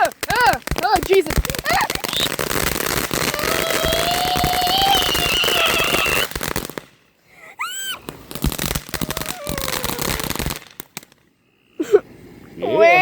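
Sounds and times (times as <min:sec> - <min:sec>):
fireworks crackling: 0:00.0 - 0:07.1, 0:07.9 - 0:11.3
firework whistles: 0:01.9 - 0:06.6, 0:07.7 - 0:10.9.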